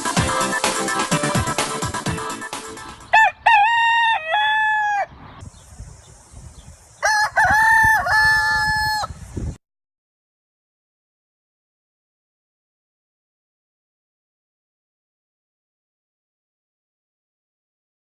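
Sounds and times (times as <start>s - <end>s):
music track: 0.0s - 3.2s
rooster crowing: 3.1s - 5.2s, 7.0s - 9.2s.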